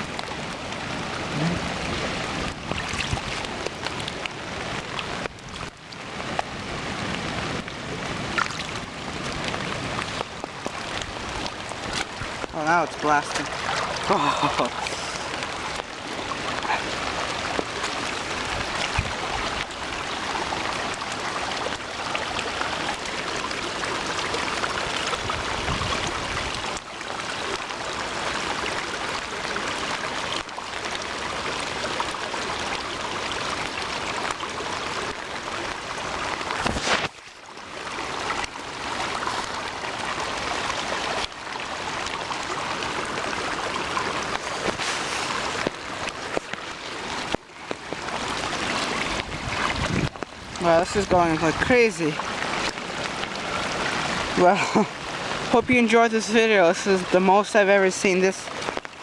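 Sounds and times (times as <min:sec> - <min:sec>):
floodwater rushing in river: 0:00.0 - 0:59.0.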